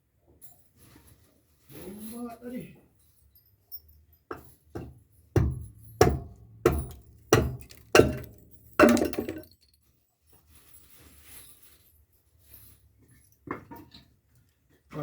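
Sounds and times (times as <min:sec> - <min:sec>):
hammer striking timber: 0:04.8 - 0:09.4.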